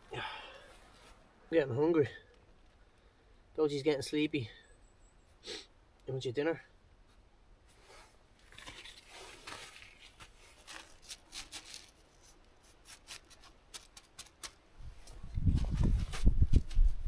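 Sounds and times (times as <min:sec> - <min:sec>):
rustling and handling: 0:07.1 - 0:16.9
small clicks and scrapes: 0:08.4 - 0:15.2.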